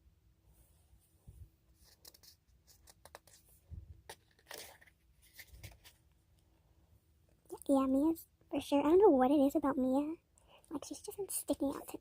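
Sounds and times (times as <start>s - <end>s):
paper rustling and crinkling: 1.8s - 6.0s.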